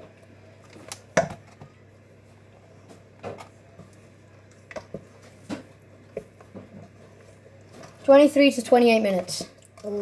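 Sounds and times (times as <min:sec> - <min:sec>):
low steady hum: 0:00.0 - 0:10.0.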